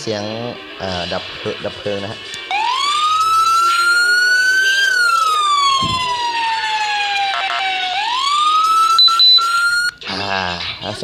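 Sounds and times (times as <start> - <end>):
electronic wail siren: 2.5 - 10.0.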